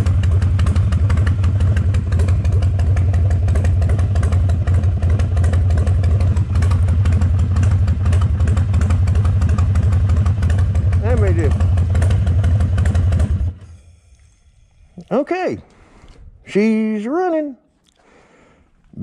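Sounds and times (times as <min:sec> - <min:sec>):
motorcycle engine idling: 0:00.0 - 0:13.9.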